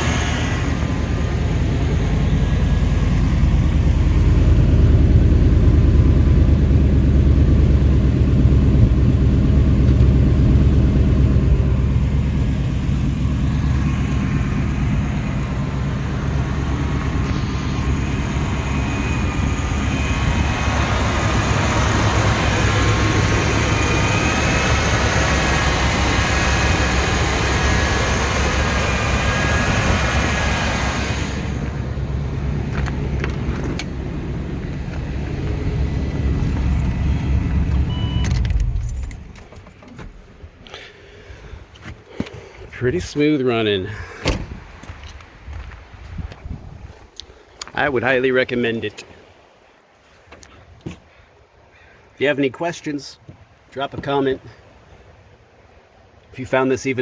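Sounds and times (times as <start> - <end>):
car engine idling: 0.0 - 43.4
faint higher whine: 10.5 - 39.6.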